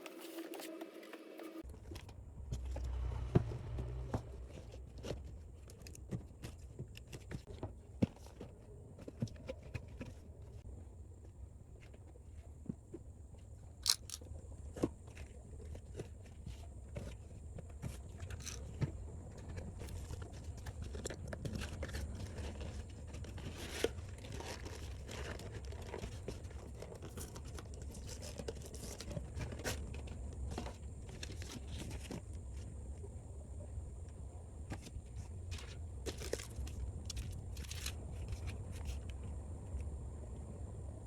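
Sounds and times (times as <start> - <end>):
plastic and cardboard rustling: 0.0 - 2.8
sharp clicks: 13.8 - 14.2.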